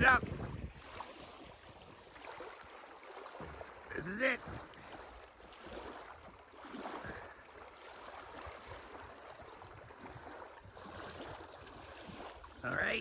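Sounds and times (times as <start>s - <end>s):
wind buffeting microphone: 0.0s - 2.6s
waves rushing on shore: 0.0s - 13.0s.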